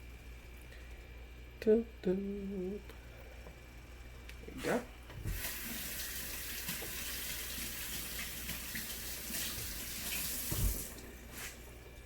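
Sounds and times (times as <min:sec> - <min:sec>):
water running from a tap: 0:05.3 - 0:11.0.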